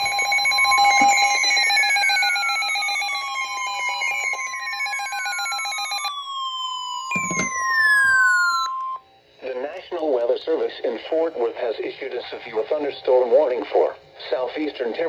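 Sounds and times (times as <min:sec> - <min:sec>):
steady high alarm tone: 0:00.0 - 0:09.3
falling siren-like sweeps: 0:05.9 - 0:09.0.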